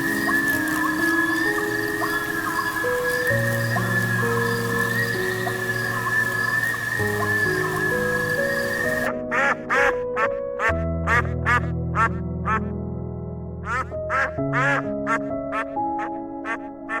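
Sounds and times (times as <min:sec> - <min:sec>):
soft background music: 0:00.0 - 0:17.0
duck quacking: 0:08.6 - 0:12.6, 0:13.7 - 0:17.0.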